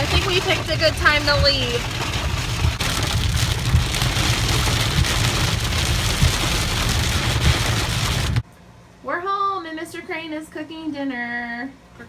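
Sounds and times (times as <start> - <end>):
rain falling on a car: 0.0 - 8.4
steady low rumble: 0.0 - 8.4.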